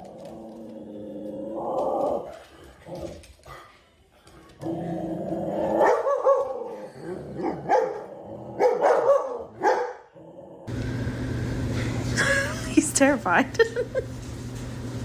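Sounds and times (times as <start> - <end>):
dog barking and growling: 4.6 - 10.7.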